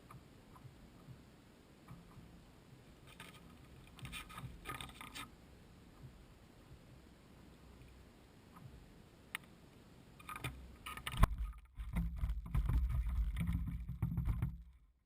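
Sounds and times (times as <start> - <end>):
low thumps and rumbling: 11.2 - 14.8.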